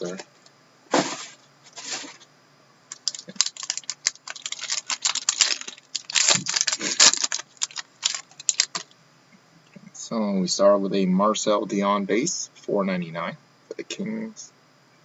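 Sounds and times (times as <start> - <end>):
card packaging crackling and rustling: 2.9 - 8.9.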